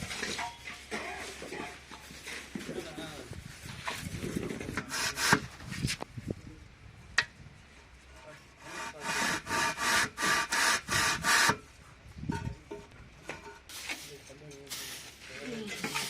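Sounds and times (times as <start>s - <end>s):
hand tool scraping mortar joints: 3.8s - 5.8s, 8.6s - 11.6s.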